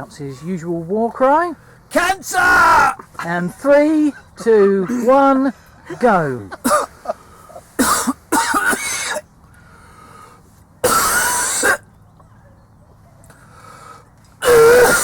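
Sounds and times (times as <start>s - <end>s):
man coughing: 5.9s - 7.1s, 7.8s - 9.2s, 10.8s - 11.8s, 14.4s - 15.0s.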